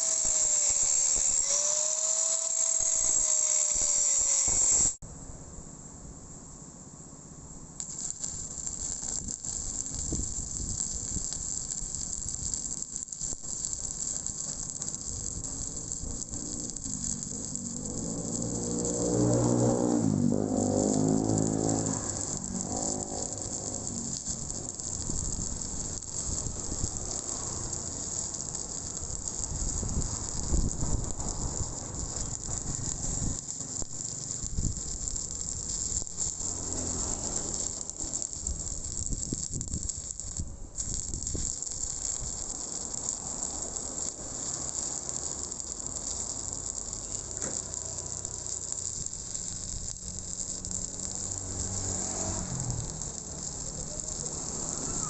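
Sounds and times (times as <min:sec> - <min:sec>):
welding arc crackling hiss: 0:00.0 - 0:05.0, 0:07.6 - 0:55.0.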